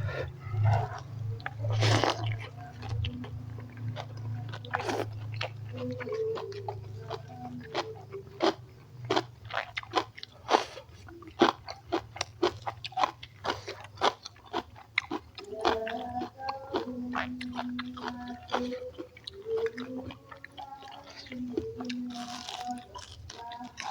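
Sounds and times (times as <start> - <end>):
wet chewing and mouth smacks: 0.3 - 23.9
crunching bites: 3.9 - 21.1.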